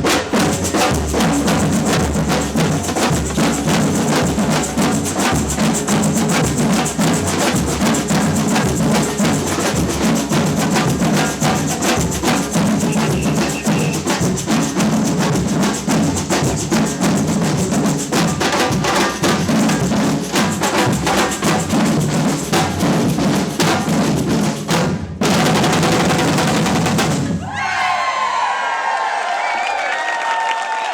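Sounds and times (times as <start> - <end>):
wood-block strikes: 0.0 - 24.3
samba drum band playing: 0.0 - 27.4
crowd cheering: 27.3 - 30.9.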